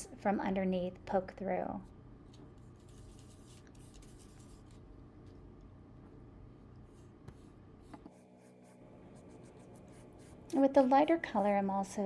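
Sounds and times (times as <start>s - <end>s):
low steady hum: 0.0s - 12.0s
paintbrush scratching on surface: 2.6s - 4.8s, 6.9s - 11.7s.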